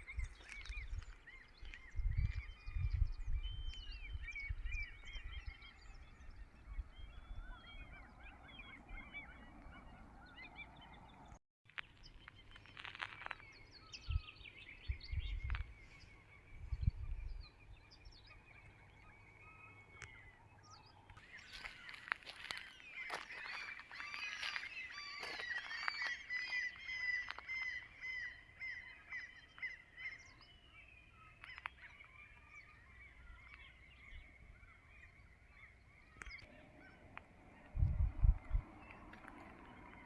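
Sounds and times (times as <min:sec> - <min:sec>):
wind rumbling on microphone: 0:00.0 - 0:10.2, 0:12.8 - 0:19.1, 0:36.2 - 0:40.0
many birds calling: 0:00.0 - 0:11.4, 0:12.4 - 0:40.0.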